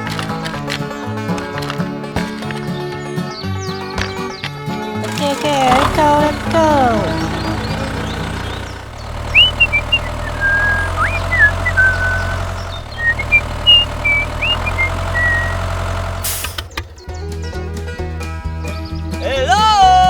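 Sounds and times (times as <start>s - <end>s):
small engine idling: 0.0s - 20.0s
high whistling chirps: 7.2s - 15.7s.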